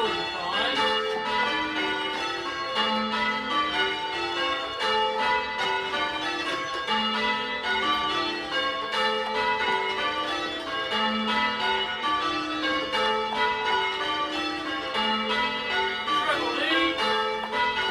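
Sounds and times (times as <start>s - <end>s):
church bells ringing in changes: 0.0s - 17.9s.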